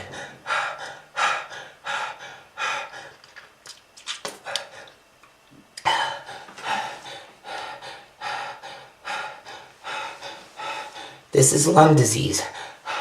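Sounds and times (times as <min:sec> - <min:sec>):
person gasping rasping breaths: 0:05.8 - 0:11.3, 0:12.4 - 0:13.0.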